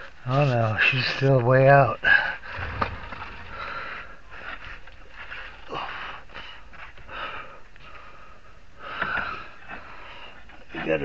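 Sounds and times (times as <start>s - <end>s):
man breathing heavily: 2.3s - 10.5s.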